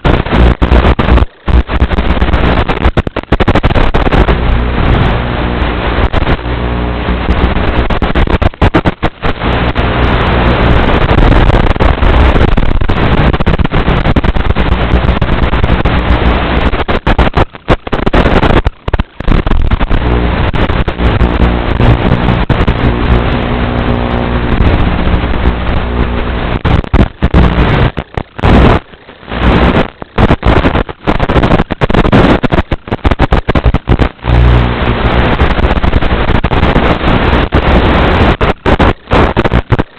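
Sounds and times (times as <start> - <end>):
wind noise on microphone: 0.0 - 39.9.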